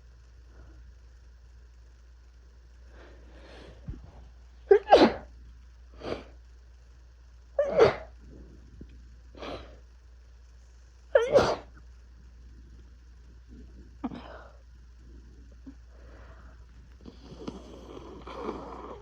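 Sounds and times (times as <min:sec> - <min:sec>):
person sneezing: 0:04.7 - 0:05.3, 0:07.6 - 0:08.2, 0:11.2 - 0:11.7.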